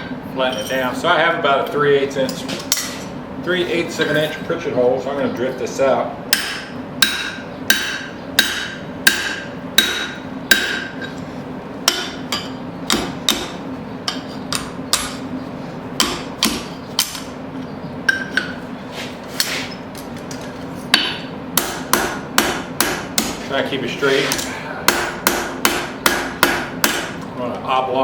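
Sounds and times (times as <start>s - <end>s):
steady low hum: 0.0s - 28.0s
hammer ringing on steel: 6.3s - 11.0s.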